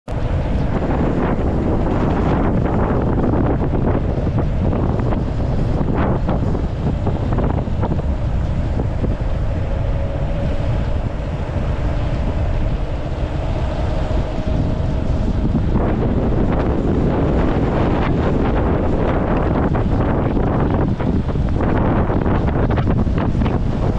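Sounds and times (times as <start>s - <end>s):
wind buffeting microphone: 0.1s - 23.9s.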